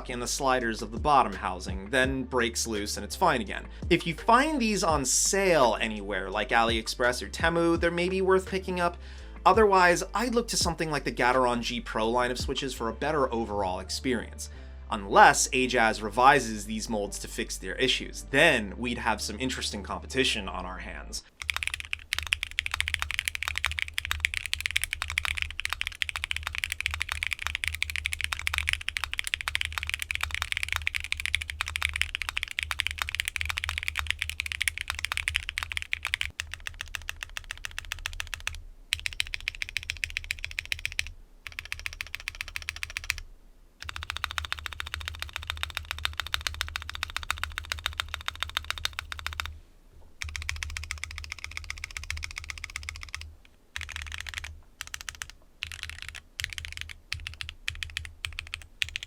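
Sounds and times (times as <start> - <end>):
mechanical keyboard typing: 21.4 - 43.2, 43.8 - 49.5, 50.2 - 59.0.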